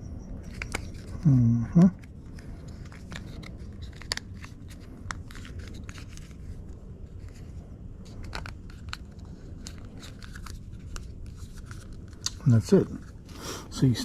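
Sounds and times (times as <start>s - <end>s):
plastic parts clicking and rustling: 8.0s - 13.1s.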